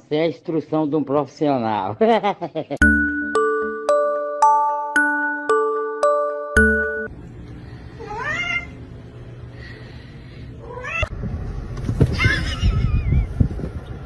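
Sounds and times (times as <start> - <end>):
cat meowing: 8.1 - 8.8.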